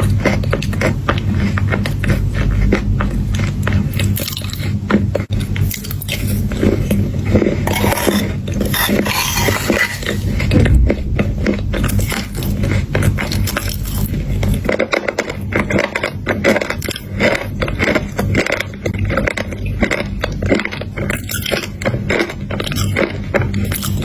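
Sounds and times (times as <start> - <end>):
chewing crunchy chocolate: 0.0 - 24.0
steady low hum: 4.8 - 14.9.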